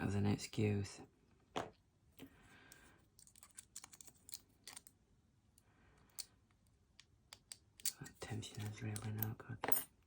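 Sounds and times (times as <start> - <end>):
lock pick clicking in padlock: 7.3 - 8.1.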